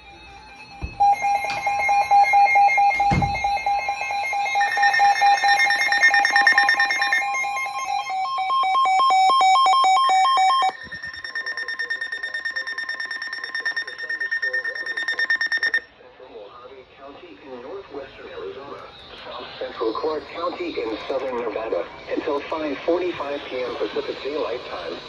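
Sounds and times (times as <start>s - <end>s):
pulsing electronic alert beeps: 1.0s - 15.9s
warbling data tones: 1.0s - 15.9s.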